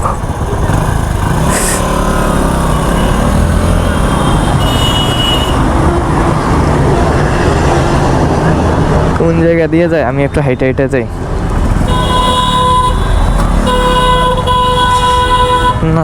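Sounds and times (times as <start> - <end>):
motorcycle and traffic rumble: 0.0 - 16.0
short hiss: 1.5 - 1.9.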